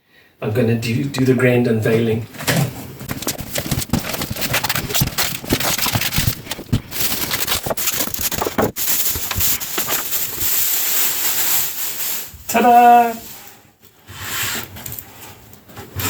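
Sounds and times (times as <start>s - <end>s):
knocks and clicks: 2.5s - 10.0s
packaging rustling: 2.8s - 12.5s.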